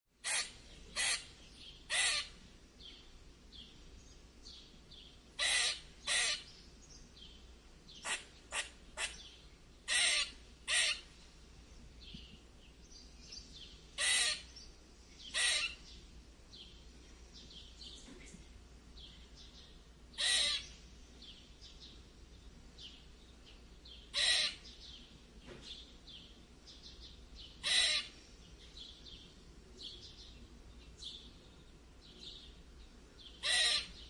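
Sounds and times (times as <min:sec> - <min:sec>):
squirrel squeaking: 0:00.2 - 0:02.4, 0:05.4 - 0:06.6, 0:08.0 - 0:11.1, 0:14.0 - 0:14.5, 0:15.3 - 0:15.8, 0:20.2 - 0:20.7, 0:24.1 - 0:24.6, 0:27.6 - 0:28.2, 0:33.4 - 0:34.0.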